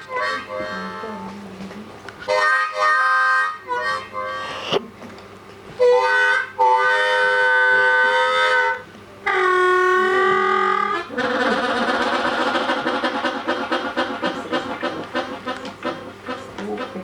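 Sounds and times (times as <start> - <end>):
harmonica chords: 0.0 - 1.2, 2.2 - 4.9, 5.8 - 11.0.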